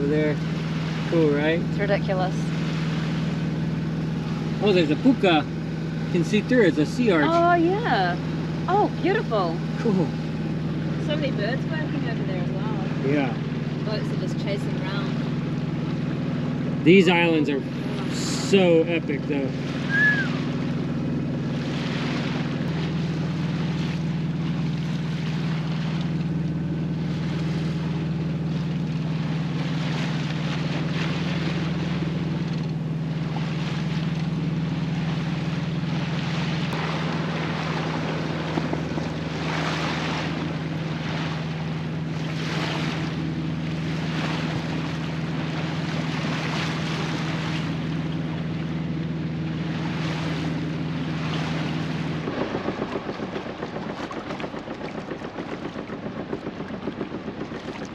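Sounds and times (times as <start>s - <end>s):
boat engine droning: 0.0s - 57.9s
water rushing along hull: 0.0s - 57.9s
wind buffeting microphone: 36.8s - 40.9s, 51.4s - 57.9s.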